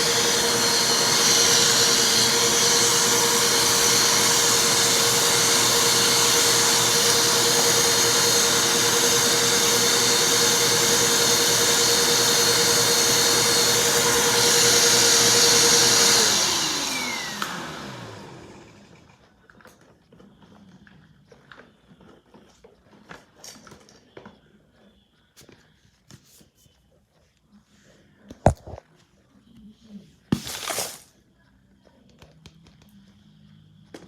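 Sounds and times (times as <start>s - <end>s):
vacuum cleaner running: 0.0s - 19.3s, 30.3s - 31.1s
vacuum motor spinning down: 0.0s - 19.3s.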